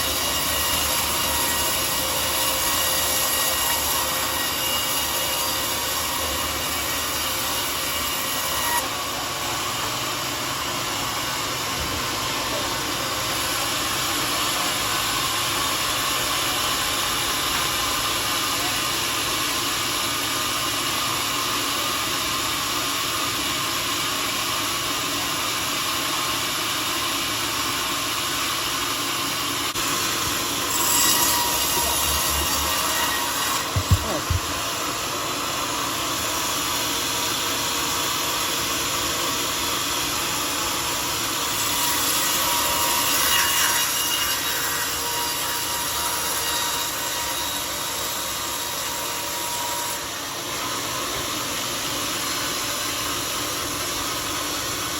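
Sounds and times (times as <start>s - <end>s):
sawmill blade cutting log: 0.0s - 54.9s
sharp knocks: 33.6s - 34.7s.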